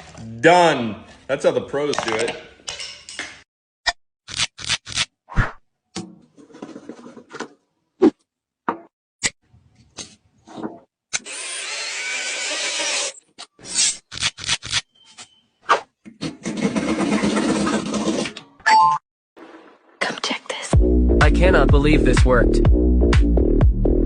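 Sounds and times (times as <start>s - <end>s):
cutting or sanding noise: 11.2s - 14.9s.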